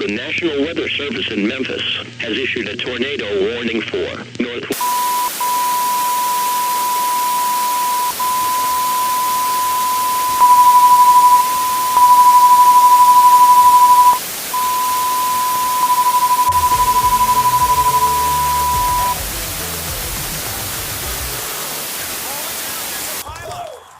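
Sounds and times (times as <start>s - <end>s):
steady high alarm tone: 4.8s - 19.2s
hiss: 14.2s - 15.8s, 19.2s - 23.2s.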